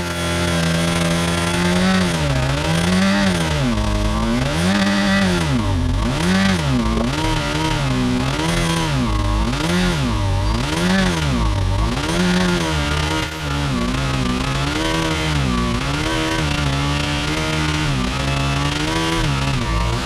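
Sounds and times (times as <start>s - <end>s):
car engine revving: 0.0s - 20.0s.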